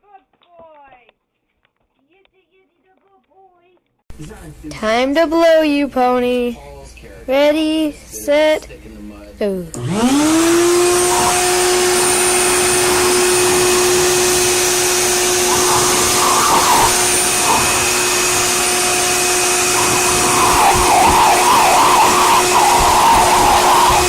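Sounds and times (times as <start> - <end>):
electric blower motor whining: 9.8 - 24.0.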